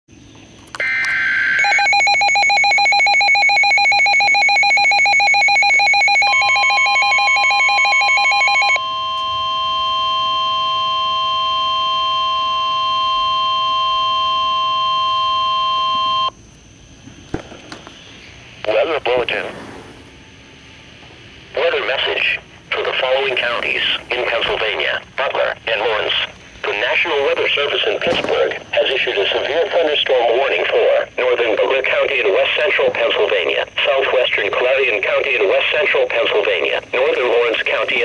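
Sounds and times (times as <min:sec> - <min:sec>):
rapidly pulsing electronic beep: 0:00.8 - 0:16.3
warbling data tones: 0:00.8 - 0:16.4, 0:17.3 - 0:38.0
steady warning alarm tone: 0:00.8 - 0:16.5, 0:17.3 - 0:38.0.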